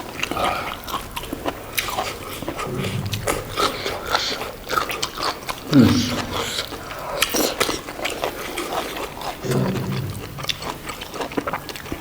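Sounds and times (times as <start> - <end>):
wet chewing and lip smacks: 0.0 - 12.0
low hum: 2.6 - 3.8, 9.4 - 10.9.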